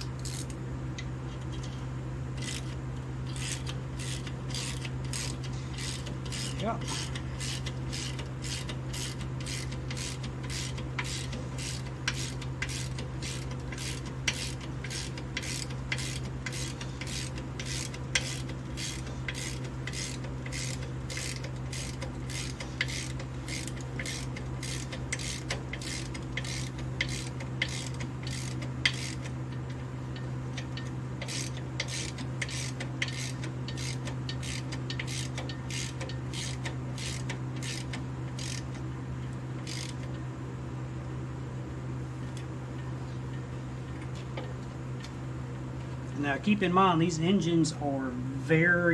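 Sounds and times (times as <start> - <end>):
steady low hum: 0.0 - 48.9
ratchet wrench clicking: 0.1 - 0.6, 2.4 - 29.3, 30.6 - 38.8, 39.6 - 40.0.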